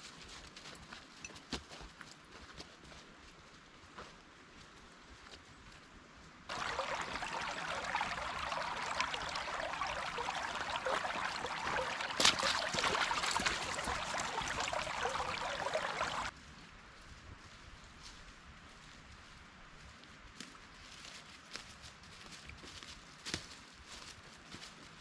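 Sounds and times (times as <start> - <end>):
stream water rushing: 6.5 - 16.3.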